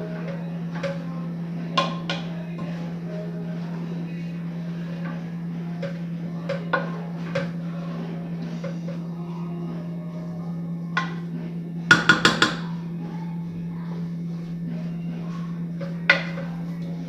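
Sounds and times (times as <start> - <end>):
utensil knocking against pan: 11.9 - 12.8.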